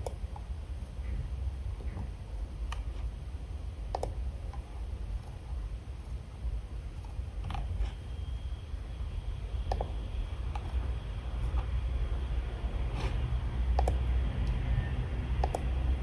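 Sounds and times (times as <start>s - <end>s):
low steady rumble: 0.0s - 16.0s
keyboard keystrokes: 13.7s - 14.6s, 15.4s - 15.7s.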